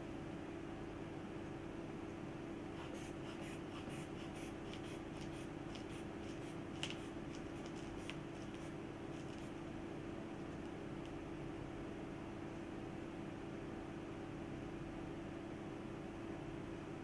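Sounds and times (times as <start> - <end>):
steady low hum: 0.0 - 17.0
scratchy rubbing and crackling: 2.8 - 9.6.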